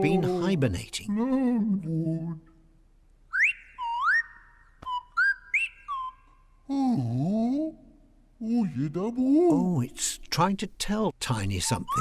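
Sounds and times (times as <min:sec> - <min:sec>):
slide whistle swoops: 0:03.3 - 0:06.3.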